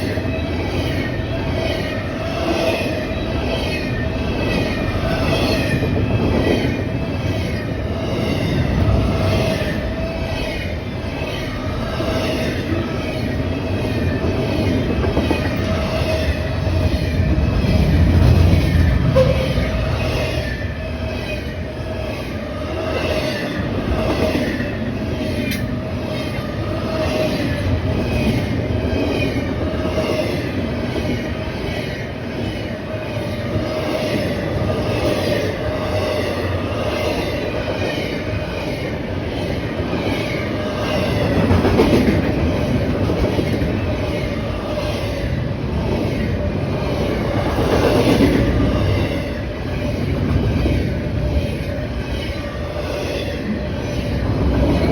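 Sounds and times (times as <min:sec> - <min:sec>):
train wheels rumbling on rails: 0:00.0 - 0:54.9
train wheels squealing: 0:00.0 - 0:54.9
wheels clickety-clack: 0:14.0 - 0:19.7, 0:40.0 - 0:44.2.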